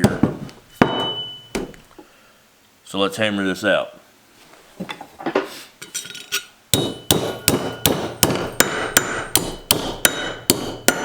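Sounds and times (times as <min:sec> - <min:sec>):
hammer beating copper pipe on steel: 0:00.0 - 0:01.4, 0:06.7 - 0:11.0.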